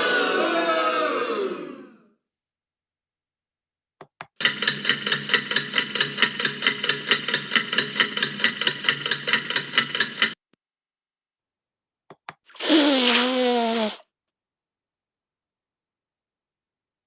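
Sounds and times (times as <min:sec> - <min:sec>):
rapid mechanical clicks: 0:04.3 - 0:10.4.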